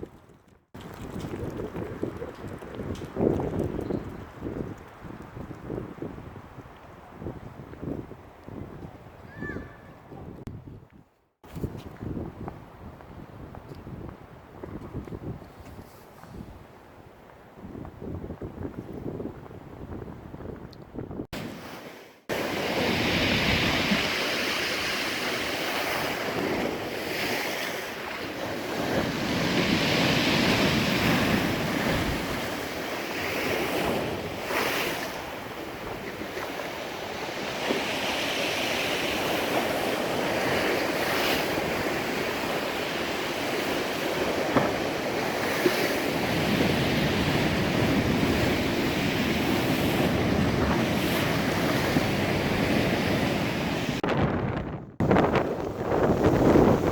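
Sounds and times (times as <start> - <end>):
wind buffeting microphone: 0.0 - 21.6, 22.3 - 56.9
surf breaking on shore: 21.4 - 54.2.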